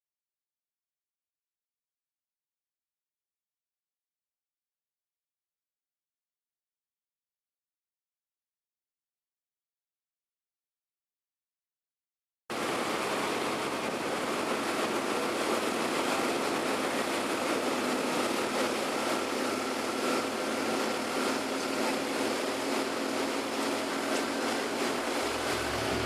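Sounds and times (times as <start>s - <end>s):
wind water and motor rush: 12.5s - 26.0s
faint steady whine: 23.7s - 26.0s.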